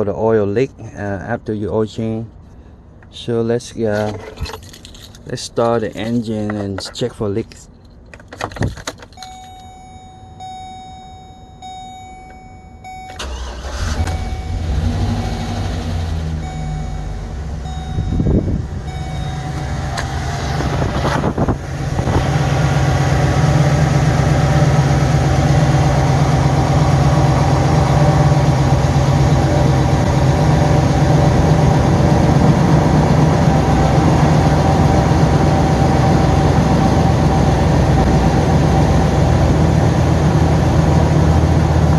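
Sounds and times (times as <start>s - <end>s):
steady tone: 9.2s - 13.3s, 14.0s - 33.8s
engine cranking and idling: 12.8s - 41.9s.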